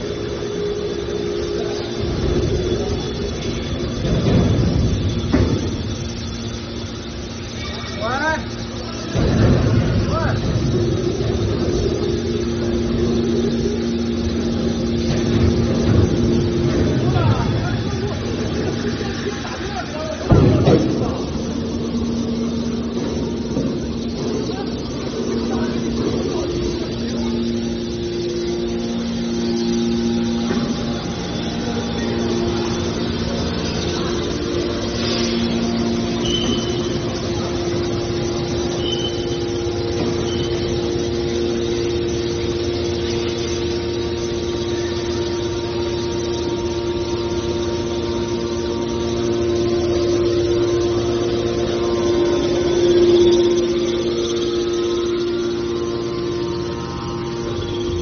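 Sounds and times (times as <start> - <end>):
hydraulic motor and pump hum: 0.0 - 58.0.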